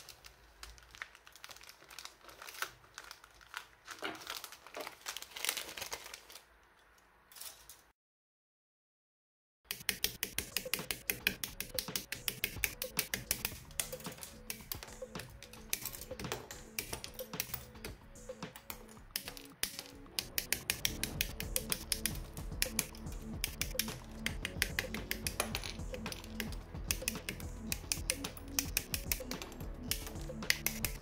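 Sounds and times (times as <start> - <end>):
music with clicking percussion: 9.7 - 31.0.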